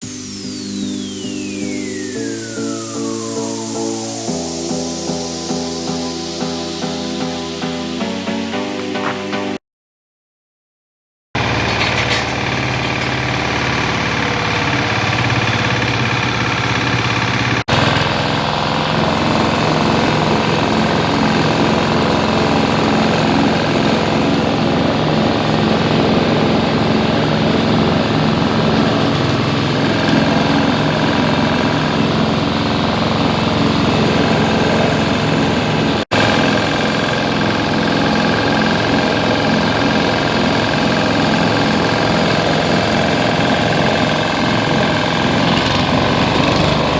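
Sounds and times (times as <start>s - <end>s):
grinding machine drone with rattle: 11.4s - 46.9s.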